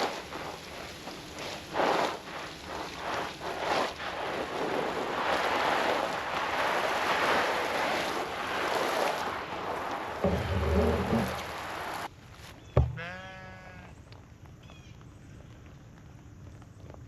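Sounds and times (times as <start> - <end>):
water spraying from hose: 0.0 - 12.1
animal bleating: 12.9 - 13.9.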